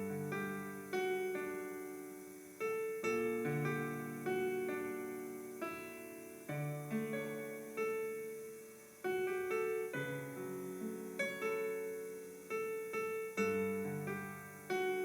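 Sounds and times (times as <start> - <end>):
slow piano music: 0.0 - 15.0.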